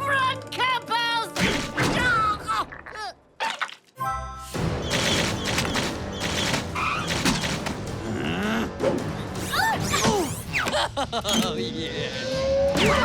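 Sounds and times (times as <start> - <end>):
music: 0.0 - 13.0
cartoon bazooka firing: 4.8 - 7.7.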